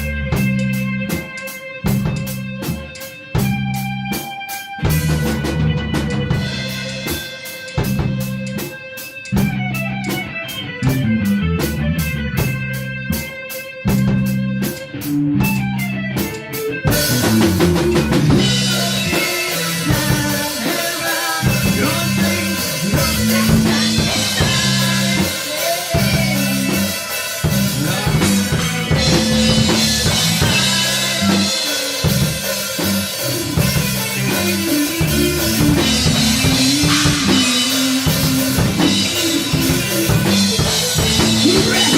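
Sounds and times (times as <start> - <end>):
band music with drums and bass: 0.0 - 41.9
ticking beat: 16.9 - 41.9.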